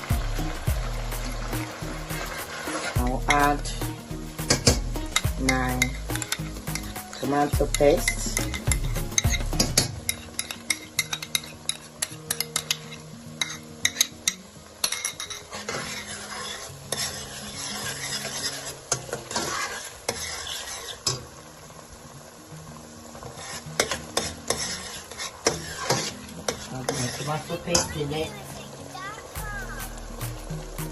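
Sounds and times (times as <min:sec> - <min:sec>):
frying sizzle: 0:00.0 - 0:30.9
spoon stirring in a pot: 0:04.6 - 0:21.2, 0:23.2 - 0:28.0.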